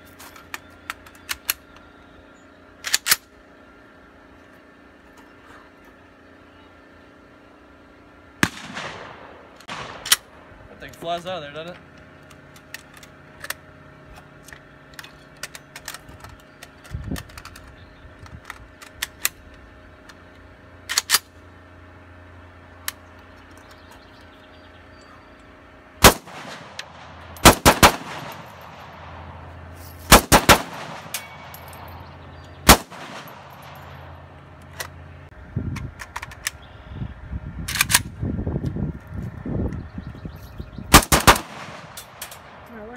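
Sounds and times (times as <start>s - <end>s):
gunshots: 8.4s - 10.2s, 26.0s - 29.3s, 30.1s - 31.9s, 32.6s - 33.9s, 40.9s - 42.5s.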